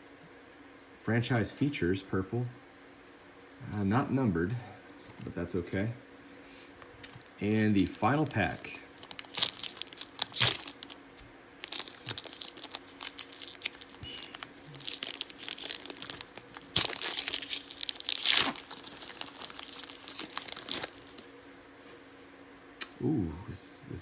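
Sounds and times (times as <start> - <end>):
foil wrapper tearing and crinkling: 6.7 - 21.3.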